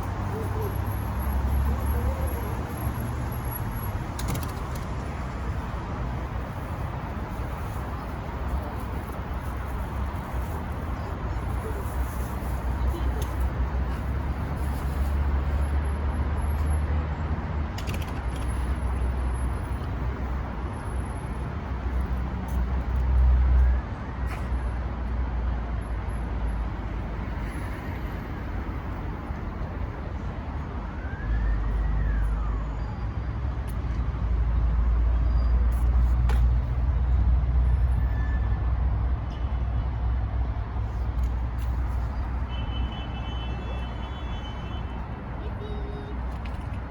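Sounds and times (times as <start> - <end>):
heavy low traffic rumble: 0.0 - 46.9
hum of passing cars: 0.0 - 46.9.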